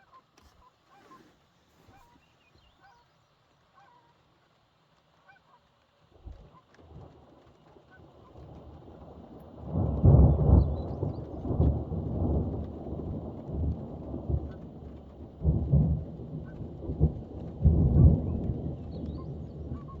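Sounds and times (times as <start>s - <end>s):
rain: 2.8s - 20.0s
thunder rumbling: 6.8s - 20.0s.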